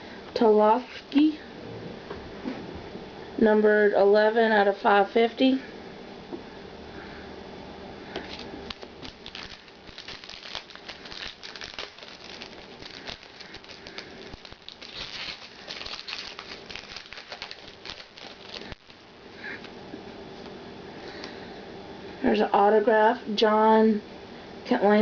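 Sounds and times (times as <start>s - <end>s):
wrapper crinkling and tearing: 8.3s - 19.7s.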